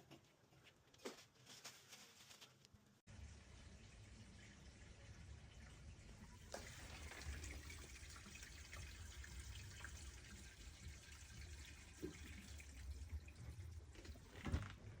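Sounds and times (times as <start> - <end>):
water trickling in a sink: 3.1 - 15.0.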